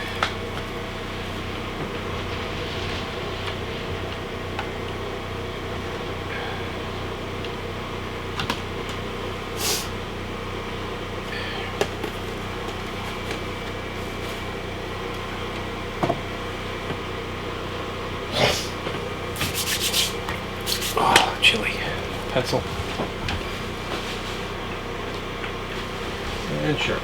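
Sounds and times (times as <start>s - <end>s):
steady mechanical hum: 0.0s - 27.0s
handling rustles: 19.4s - 24.9s.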